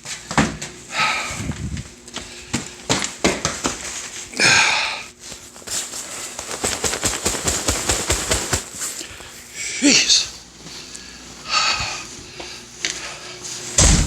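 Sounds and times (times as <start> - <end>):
footsteps: 10.3 - 14.0
handling knocks: 13.8 - 14.0.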